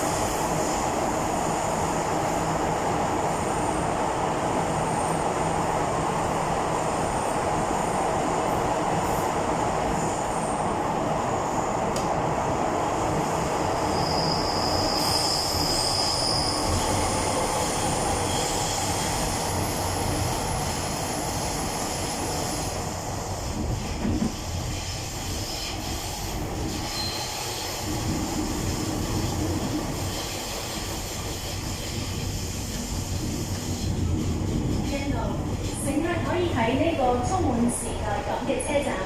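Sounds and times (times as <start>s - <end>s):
train wheels rumbling: 0.0s - 39.0s
high wheel squeal: 13.6s - 19.8s, 24.7s - 27.9s.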